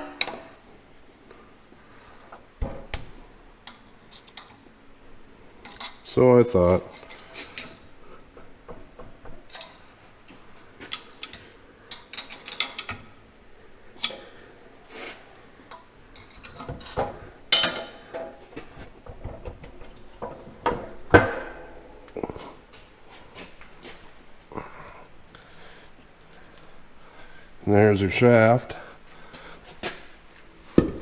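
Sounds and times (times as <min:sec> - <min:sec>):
metal tools clinking: 0:16.2 - 0:18.2.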